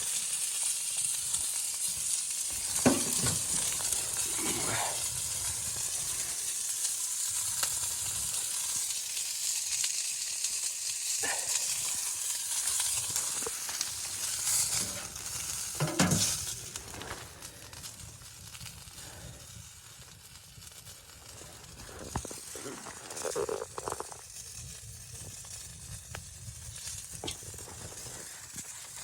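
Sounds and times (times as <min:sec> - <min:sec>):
food sizzling while frying: 0:00.0 - 0:29.0
knocks: 0:02.8 - 0:03.4, 0:15.8 - 0:16.4.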